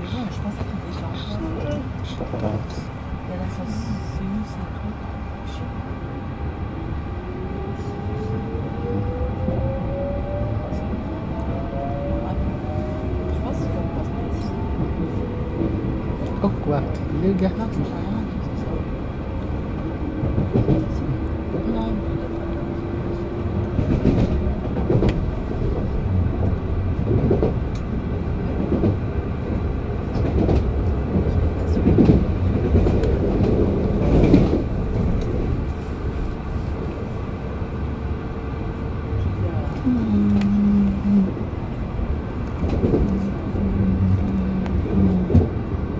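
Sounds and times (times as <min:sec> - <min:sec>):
wheels rumbling on track: 0:00.0 - 0:45.9.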